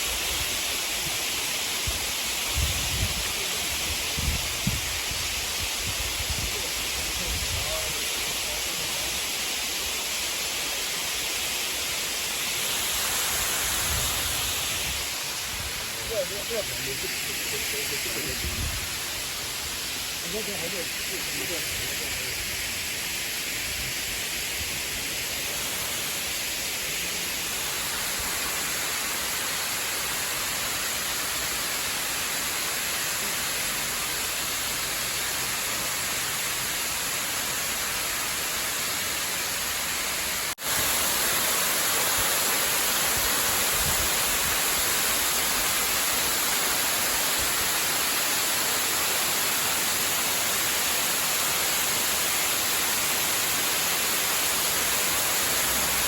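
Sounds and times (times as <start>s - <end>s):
rushing hiss of water: 0.0s - 56.0s.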